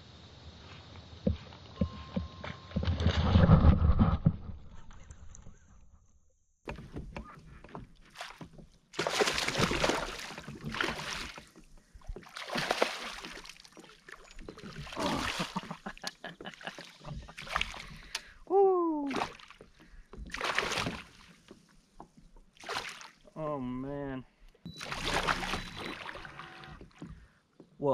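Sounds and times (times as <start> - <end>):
kayak paddle strokes in water: 6.7 - 18.4, 19.1 - 23.3, 24.7 - 27.4.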